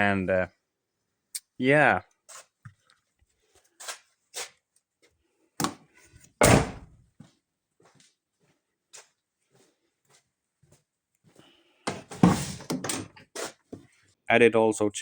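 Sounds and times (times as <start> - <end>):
heavy thud: 6.4 - 6.9, 11.9 - 12.7.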